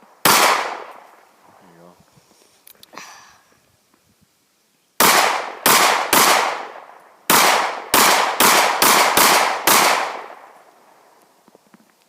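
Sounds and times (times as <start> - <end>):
gunshots with echo: 0.2 - 1.0, 5.0 - 10.5.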